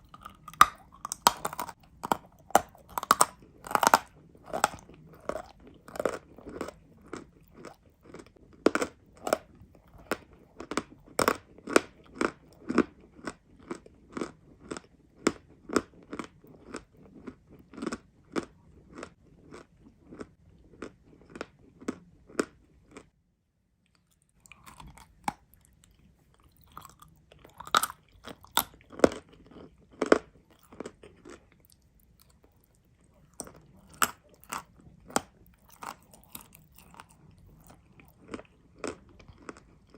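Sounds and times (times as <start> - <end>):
person chewing crunchy clay: 0.0 - 23.2, 23.9 - 39.9.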